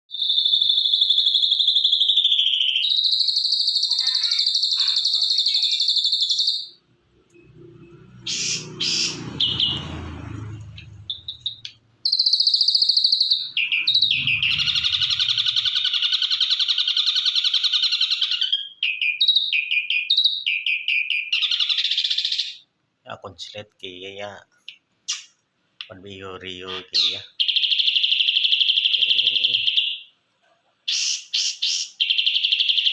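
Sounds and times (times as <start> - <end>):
bird singing buzzy notes: 6.4 - 16.2.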